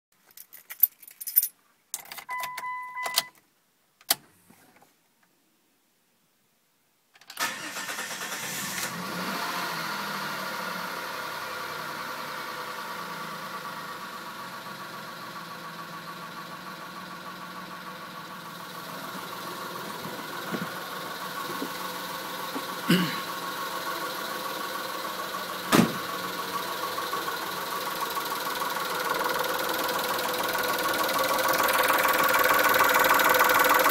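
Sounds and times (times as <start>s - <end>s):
car engine starting and idling: 7.4s - 33.9s.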